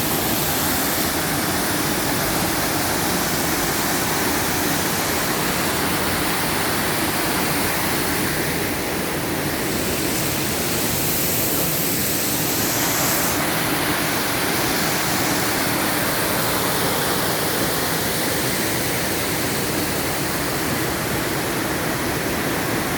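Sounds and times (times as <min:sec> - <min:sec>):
waterfall splashing: 0:00.0 - 0:22.9.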